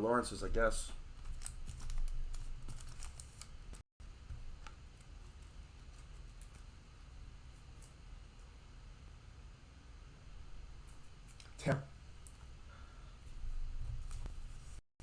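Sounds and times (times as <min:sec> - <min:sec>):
cellophane crinkling: 0:01.2 - 0:03.8.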